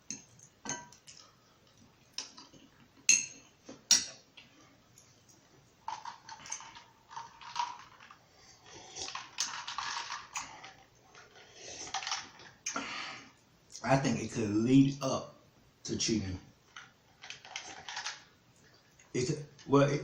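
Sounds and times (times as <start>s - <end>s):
utensil clinking against dish: 0.0s - 1.3s.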